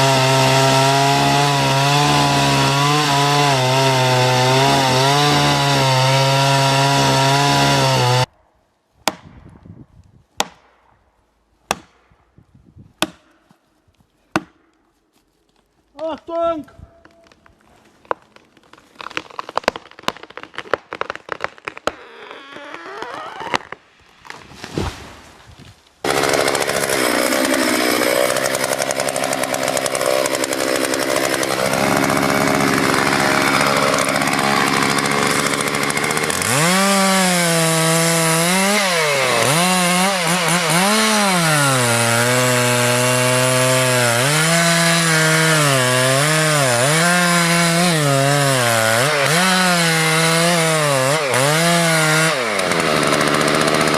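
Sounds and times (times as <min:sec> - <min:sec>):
chainsaw cutting wood: 0:00.0 - 0:08.3, 0:26.0 - 0:53.9.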